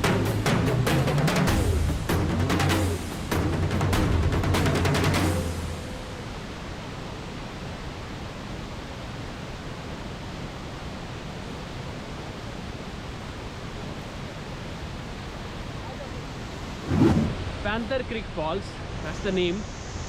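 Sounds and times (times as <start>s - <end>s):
background music: 0.0s - 6.5s
waterfall rushing: 0.0s - 19.7s.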